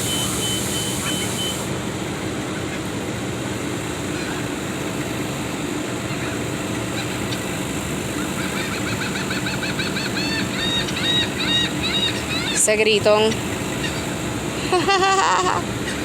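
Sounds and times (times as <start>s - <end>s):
traffic hum: 0.0s - 16.0s
bird chirping rapidly: 6.9s - 14.2s.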